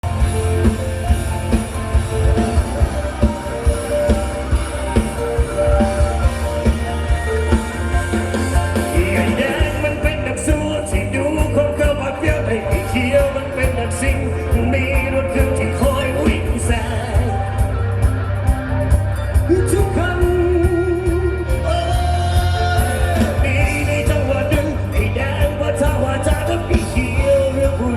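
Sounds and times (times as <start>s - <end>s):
drum kit and bass beat: 0.0s - 27.9s
held melody line: 0.0s - 27.9s
live band music: 0.0s - 27.9s.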